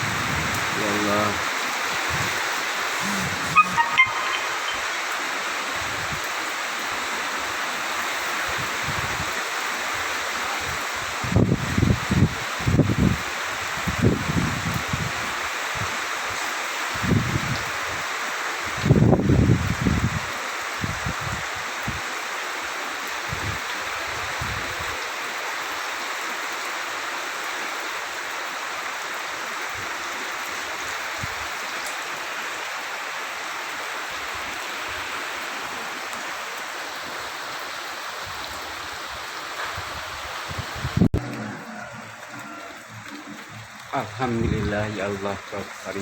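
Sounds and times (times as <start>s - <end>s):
wind buffeting microphone: 0.0s - 0.8s, 11.1s - 15.9s, 18.8s - 21.5s
heavy rain hissing: 0.0s - 46.0s.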